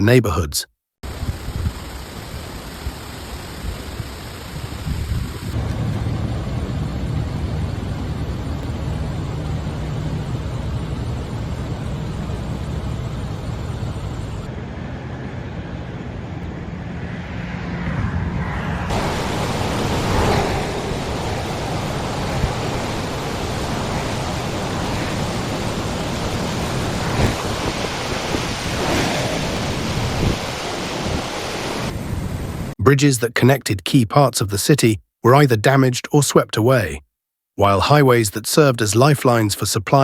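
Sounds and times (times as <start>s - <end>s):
wind noise: 1.1s - 6.1s, 14.5s - 32.7s
rushing water: 18.9s - 31.9s.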